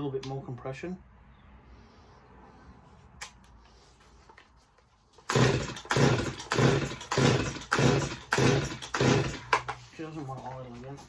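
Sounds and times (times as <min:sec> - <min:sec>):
chainsaw engine revving: 0:05.2 - 0:09.7.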